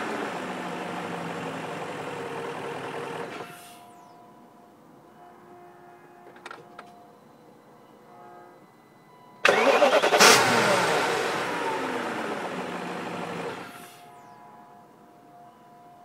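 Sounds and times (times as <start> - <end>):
car engine starting: 9.4 - 14.0.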